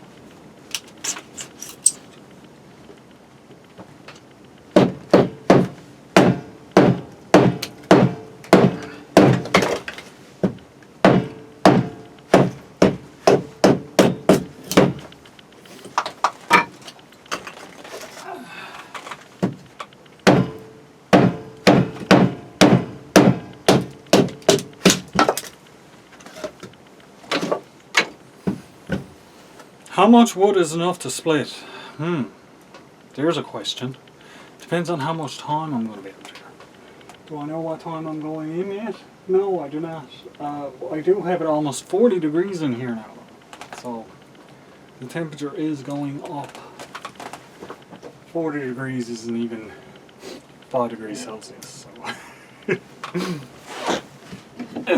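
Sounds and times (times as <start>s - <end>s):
firewood splitting whacks: 4.8s - 10.1s, 11.0s - 15.1s, 20.3s - 20.6s, 21.2s - 25.6s.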